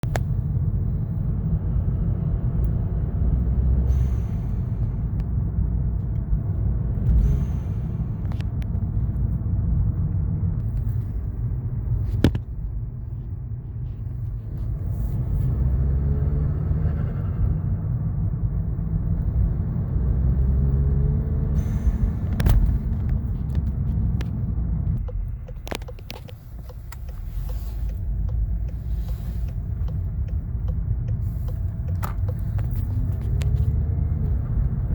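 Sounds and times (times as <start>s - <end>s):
car engine revving: 14.6s - 34.9s.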